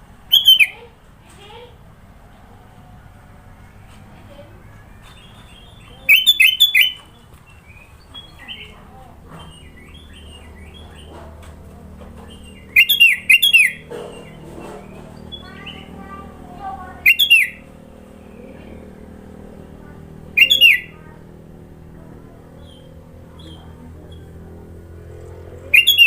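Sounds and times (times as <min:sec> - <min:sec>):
soft bird chirps and twitters: 0:00.0 - 0:01.6, 0:03.6 - 0:26.0
bird singing sharp whistled notes: 0:00.3 - 0:00.7, 0:05.6 - 0:07.0, 0:12.6 - 0:13.8, 0:17.1 - 0:17.6, 0:20.4 - 0:20.9, 0:25.8 - 0:26.0.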